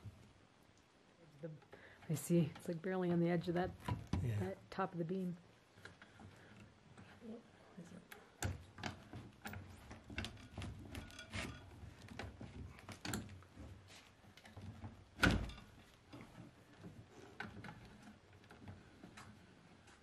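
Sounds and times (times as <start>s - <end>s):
wooden beams and tools knocking: 8.4s - 20.0s.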